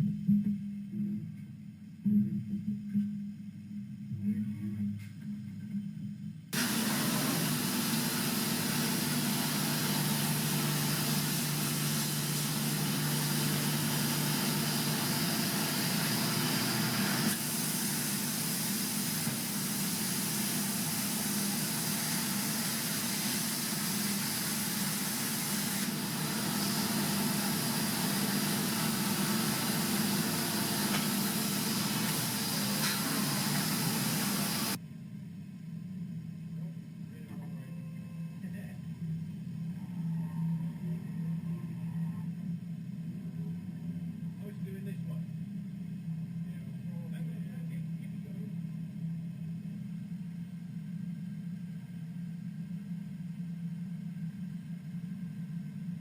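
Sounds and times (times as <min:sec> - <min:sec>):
milling machine running: 0:06.6 - 0:34.8.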